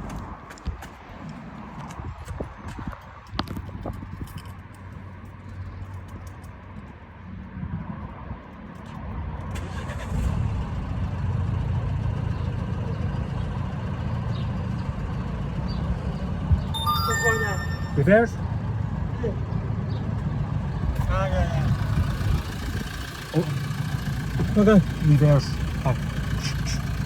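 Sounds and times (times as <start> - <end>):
car engine starting and idling: 9.5 - 11.3, 21.1 - 27.0.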